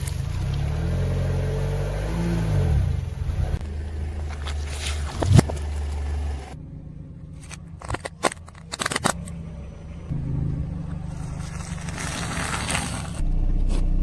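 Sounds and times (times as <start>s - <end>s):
car engine running slowly: 0.0s - 14.0s
tyre crushing brittle objects: 7.4s - 9.2s, 11.2s - 13.2s.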